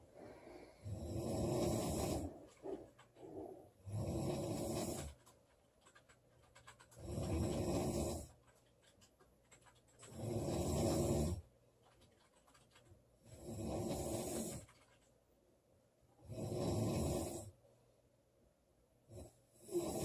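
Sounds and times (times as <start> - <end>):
woman snoring: 0.2 - 5.1, 16.3 - 17.5, 19.6 - 20.0.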